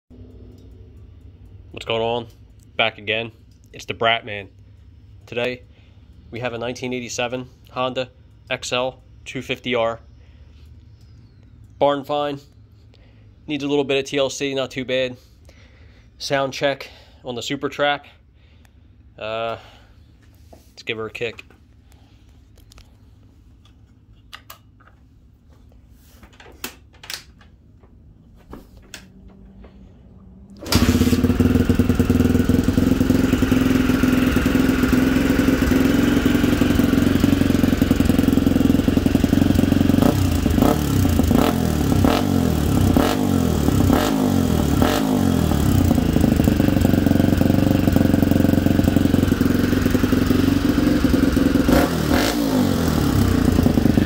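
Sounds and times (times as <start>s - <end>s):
motorcycle engine running and revving: 0.1s - 1.6s, 29.0s - 54.0s.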